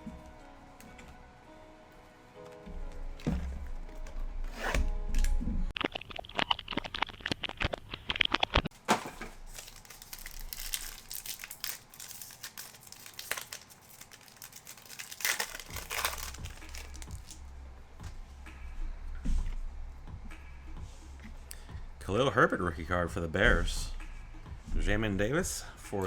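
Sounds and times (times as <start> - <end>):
foil packs crinkling and tearing: 8.4 - 17.4.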